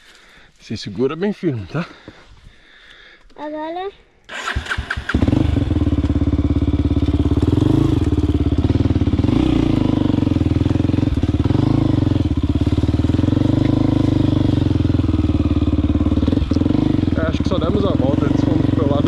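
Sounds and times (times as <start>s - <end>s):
motorcycle engine idling: 4.3s - 19.0s.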